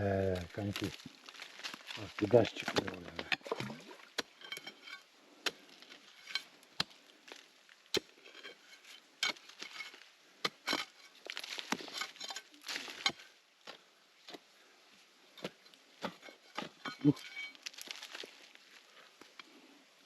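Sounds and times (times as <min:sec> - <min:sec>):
scraping and rustling soil: 0:00.0 - 0:20.0
hand tool striking stones: 0:01.6 - 0:14.4, 0:15.4 - 0:18.2.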